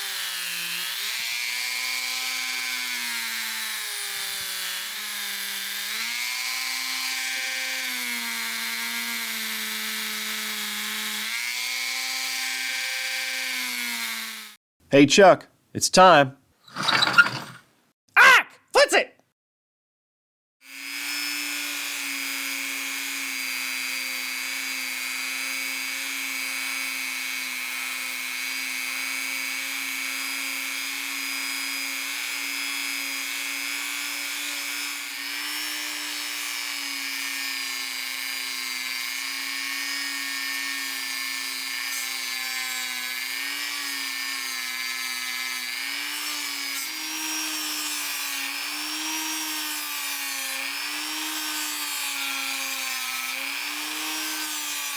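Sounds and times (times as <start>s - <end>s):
rotary tool whirring: 16.6s - 17.6s.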